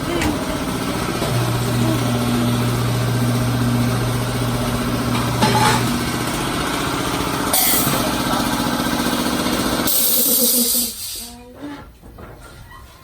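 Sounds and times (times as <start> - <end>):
high hiss bursts: 9.9 - 11.4.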